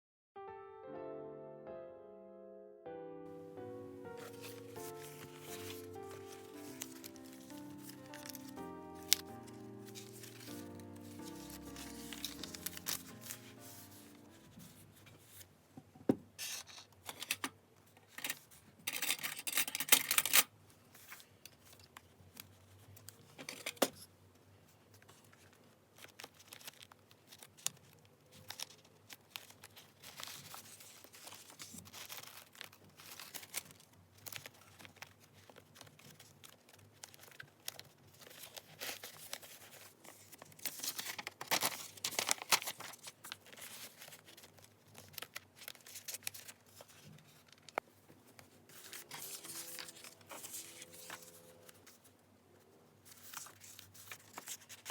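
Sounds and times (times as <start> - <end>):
paper rustling and crinkling: 4.0 - 15.5, 16.4 - 24.1, 24.7 - 52.2, 53.0 - 54.9
paper tearing: 4.4 - 14.2, 48.7 - 51.8.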